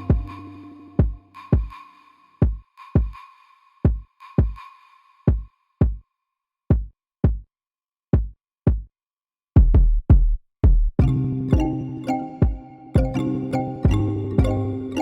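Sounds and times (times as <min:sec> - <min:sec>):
held synth tone: 0:00.0 - 0:01.3
drum machine kick hits: 0:00.1 - 0:00.4, 0:01.0 - 0:01.7, 0:08.2 - 0:08.8, 0:09.6 - 0:13.2, 0:13.8 - 0:14.7.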